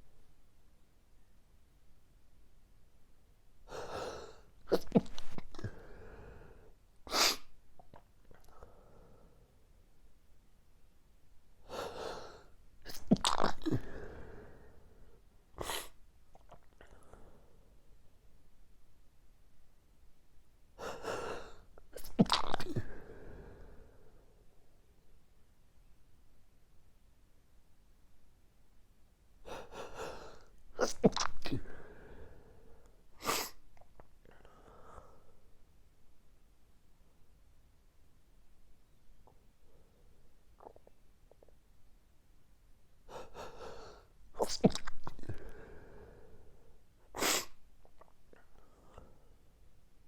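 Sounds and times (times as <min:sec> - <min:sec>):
person sneezing: 0:03.7 - 0:05.8, 0:07.1 - 0:07.6, 0:15.6 - 0:16.0, 0:30.8 - 0:31.8, 0:33.2 - 0:33.6, 0:44.4 - 0:45.4, 0:47.2 - 0:47.6
breathing: 0:05.3 - 0:06.8, 0:08.4 - 0:09.7, 0:13.7 - 0:15.3, 0:16.8 - 0:17.9, 0:22.8 - 0:24.6, 0:31.6 - 0:33.0, 0:34.3 - 0:35.5, 0:43.1 - 0:44.2, 0:45.2 - 0:46.8, 0:48.4 - 0:49.6.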